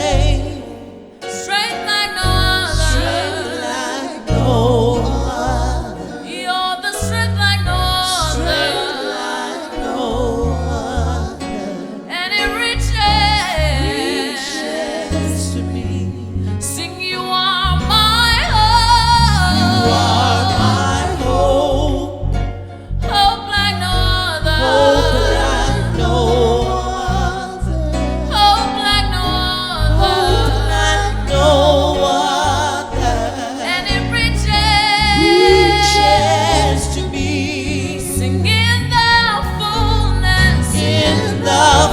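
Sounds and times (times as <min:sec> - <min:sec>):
person singing with vibrato: 0:00.0 - 0:41.9
steady bass line: 0:17.7 - 0:41.9.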